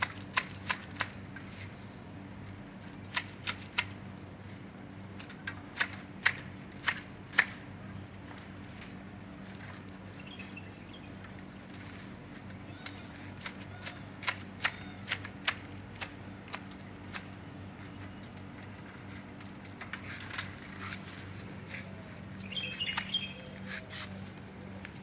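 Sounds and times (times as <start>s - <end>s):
garden shears snipping: 0.0s - 1.8s, 2.8s - 4.0s, 5.1s - 7.7s, 8.3s - 25.0s
bird chirping: 10.2s - 11.2s, 21.7s - 24.8s.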